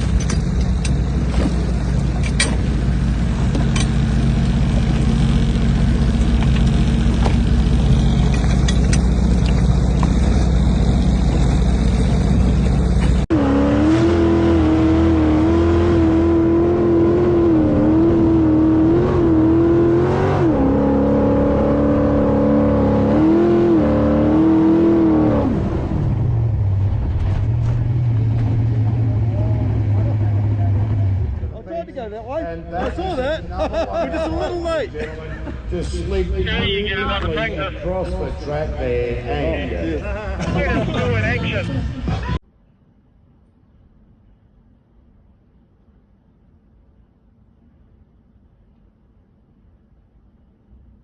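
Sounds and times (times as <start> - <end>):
motorboat engine rumble: 0.0 - 13.3
wind: 0.0 - 51.0.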